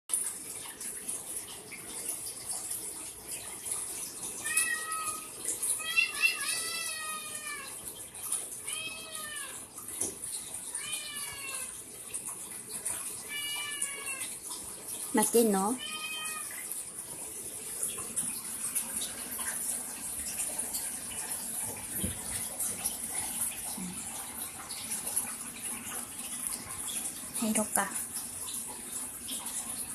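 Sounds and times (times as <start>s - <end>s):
cat meowing: 4.4s - 7.8s, 8.7s - 9.6s, 10.8s - 11.7s, 13.3s - 14.4s, 15.8s - 16.6s.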